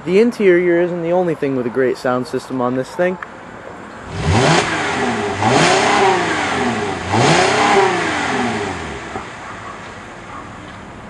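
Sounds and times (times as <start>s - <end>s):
car engine revving: 4.0s - 11.0s.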